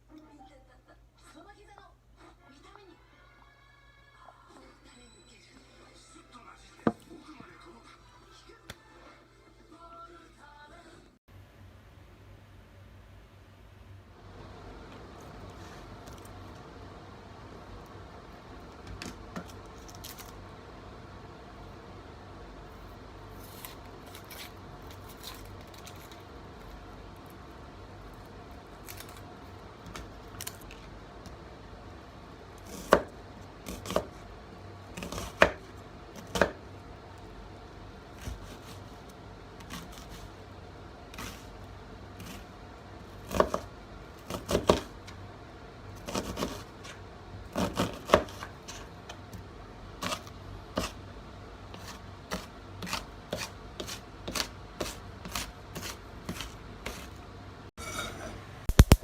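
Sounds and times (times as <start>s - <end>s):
knife chopping on cutting board: 32.7s - 34.2s, 35.0s - 36.6s, 43.2s - 44.9s, 46.0s - 46.7s, 47.5s - 48.8s, 50.0s - 51.0s, 51.7s - 57.2s.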